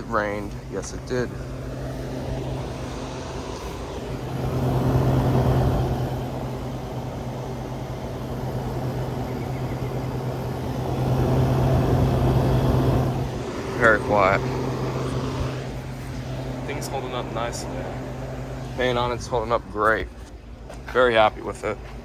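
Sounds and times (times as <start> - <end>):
air conditioner compressor hum: 0.0 - 22.0
air conditioner fan rushing: 0.0 - 22.0.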